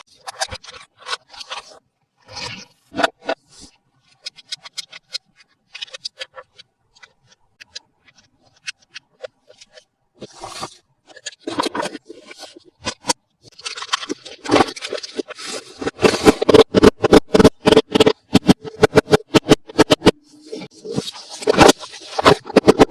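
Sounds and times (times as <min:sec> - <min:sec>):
packaging crinkling and scraping: 0:10.2 - 0:22.9.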